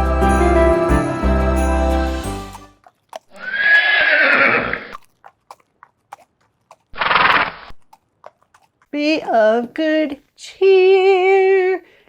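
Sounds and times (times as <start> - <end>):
festive music: 0.0 - 2.8
horse whinnying: 3.3 - 5.1.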